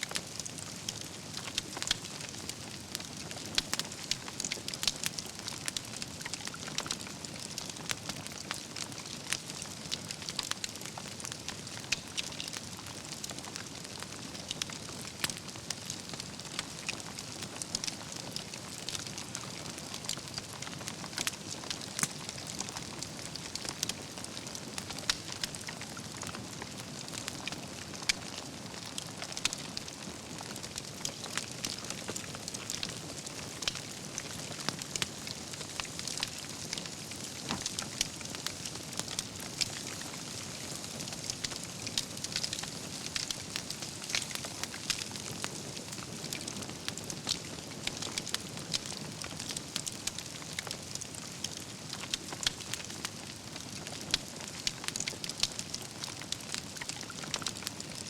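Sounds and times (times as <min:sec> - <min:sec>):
campfire logs crackling and popping: 0:00.0 - 0:58.0
steady fire hiss: 0:15.0 - 0:58.0.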